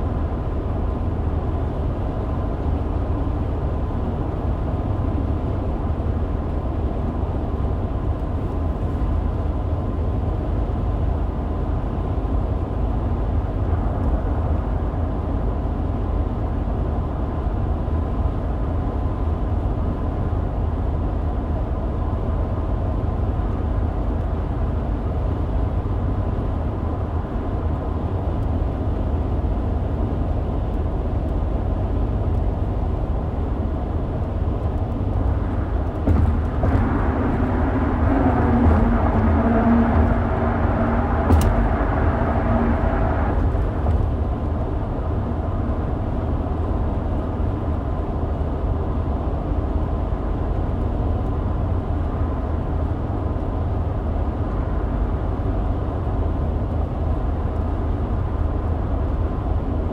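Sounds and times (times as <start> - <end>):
road and engine rumble inside car: 0.0 - 59.9
faint whine: 34.6 - 45.0.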